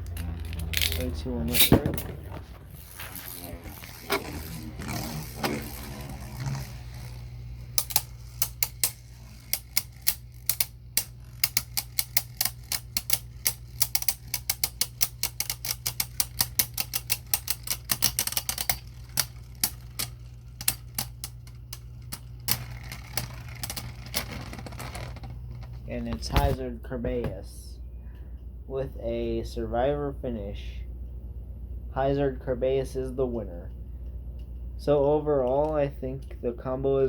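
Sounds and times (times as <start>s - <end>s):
plastic spinning tops clicking: 0.0s - 25.9s
steady low hum: 0.0s - 37.0s.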